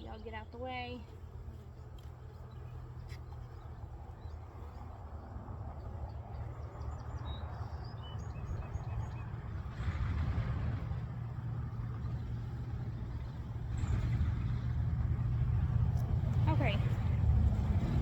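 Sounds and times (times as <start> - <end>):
small birds chirping: 0.0 - 9.4.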